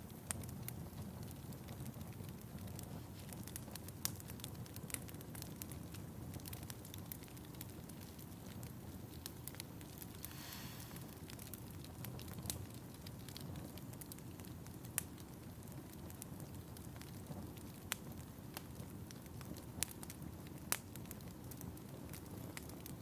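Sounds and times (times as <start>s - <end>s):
wood fire crackling: 0.0s - 23.0s
sharp pops from fire: 0.2s - 22.9s
fire hiss: 10.0s - 11.8s.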